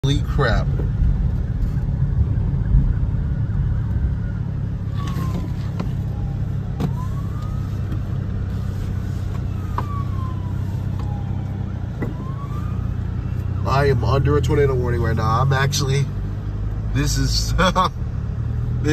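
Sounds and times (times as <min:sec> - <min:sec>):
faint warning siren sweeping: 0:01.3 - 0:16.4.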